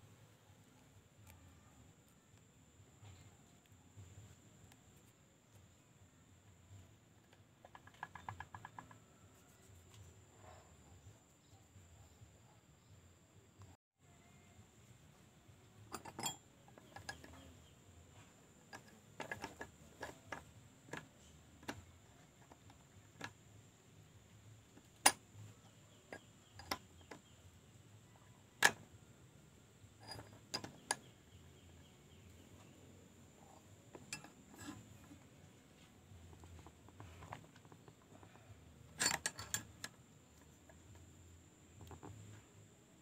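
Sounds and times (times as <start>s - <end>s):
hand tools clicking and knocking: 15.9s - 17.6s, 18.6s - 23.4s, 26.1s - 27.4s, 28.6s - 28.9s, 30.0s - 31.5s, 33.5s - 35.2s, 35.8s - 41.2s.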